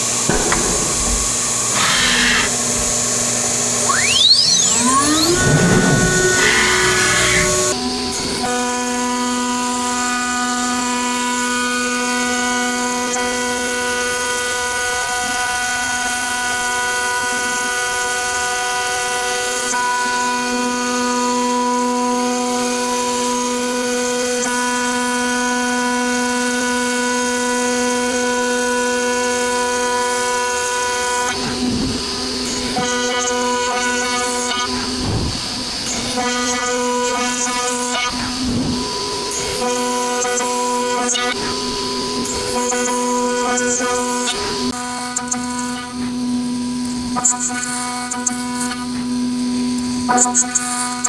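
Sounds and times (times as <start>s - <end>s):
router cutting noise: 0.0s - 51.0s
router spindle whine: 0.0s - 51.0s.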